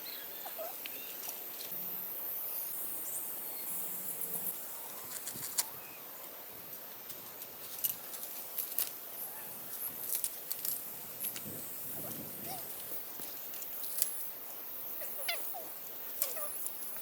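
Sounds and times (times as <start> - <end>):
light clicks and rustles: 6.8 - 9.0.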